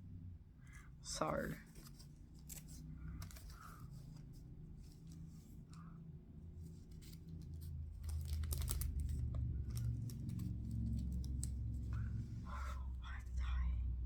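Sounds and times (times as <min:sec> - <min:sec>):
low handling rumble: 0:06.4 - 0:14.0.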